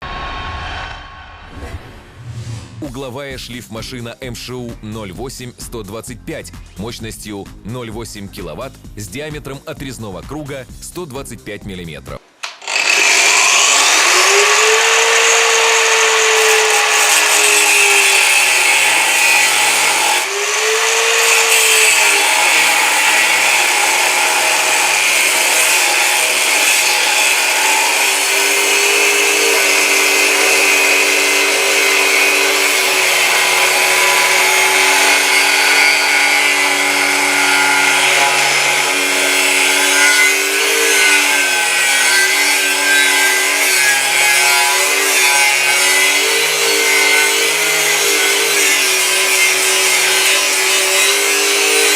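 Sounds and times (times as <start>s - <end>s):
angle grinder running: 12.4s - 51.9s.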